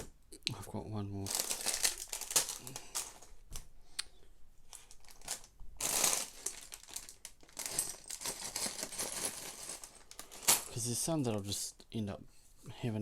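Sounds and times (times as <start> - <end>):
plastic bag crinkling: 1.2 - 3.3, 4.7 - 10.8.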